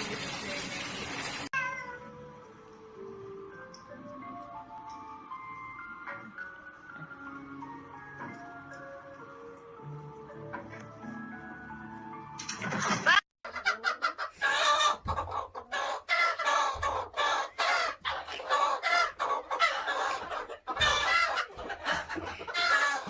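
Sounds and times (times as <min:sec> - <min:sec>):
chicken clucking: 0:12.8 - 0:23.0.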